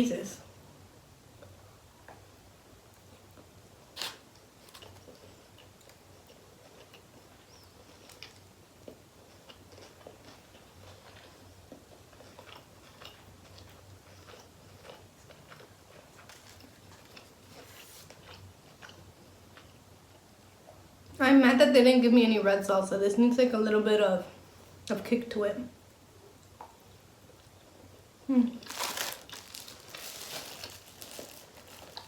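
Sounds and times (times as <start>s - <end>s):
person chewing food: 4.0s - 20.2s, 28.6s - 32.0s.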